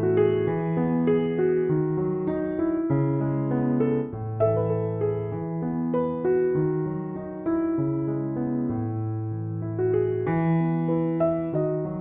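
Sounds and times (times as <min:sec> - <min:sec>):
electric piano chords: 0:00.0 - 0:12.0.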